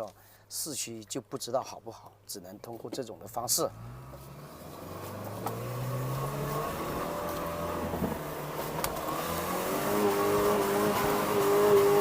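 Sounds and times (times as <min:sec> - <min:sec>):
engine pulling under load: 0:03.4 - 0:12.0.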